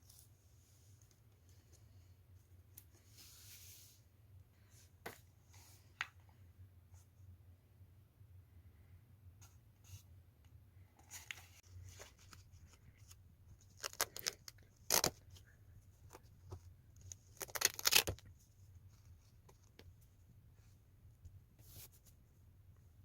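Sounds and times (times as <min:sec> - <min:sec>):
faint low hum: 0:00.0 - 0:23.0
plastic or paper tearing: 0:17.4 - 0:18.2.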